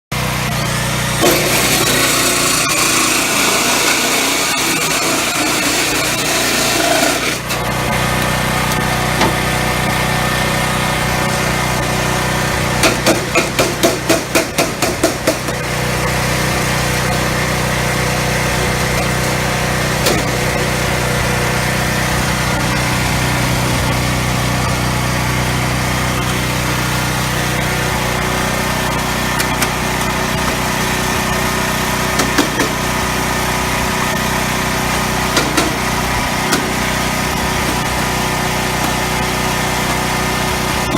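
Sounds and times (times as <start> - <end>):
machine motor humming: 0.2 - 40.9
sharp knocks: 12.8 - 15.6, 32.2 - 32.8, 35.4 - 35.8.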